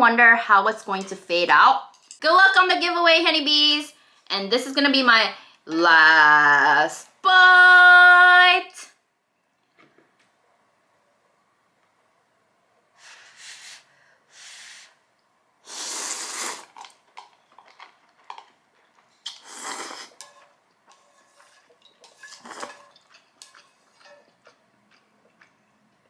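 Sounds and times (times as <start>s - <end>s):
noodles being slurped: 15.7s - 18.6s, 19.2s - 25.5s.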